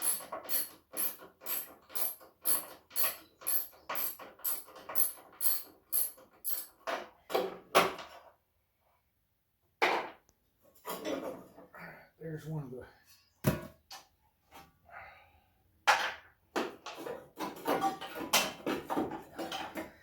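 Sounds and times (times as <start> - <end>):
ratchet wrench clicking: 0.0 - 6.7.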